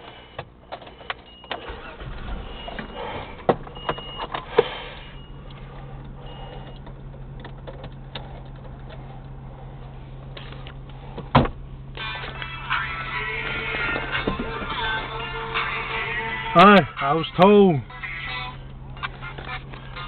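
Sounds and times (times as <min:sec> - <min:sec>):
car engine cranking and idling: 0:00.0 - 0:20.0
short warning chimes: 0:01.3 - 0:06.8.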